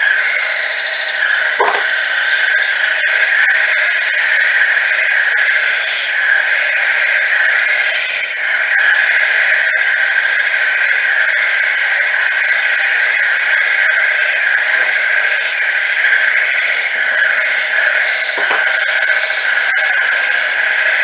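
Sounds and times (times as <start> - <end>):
mill cutting steel: 0.0 - 9.9, 13.8 - 21.0.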